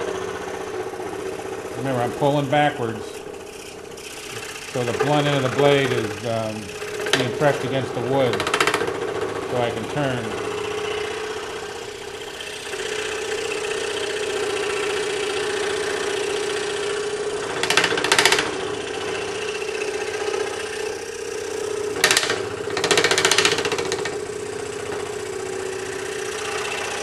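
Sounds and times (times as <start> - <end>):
saw blade cutting wood: 0.0 - 27.0
scroll saw humming: 0.0 - 27.0.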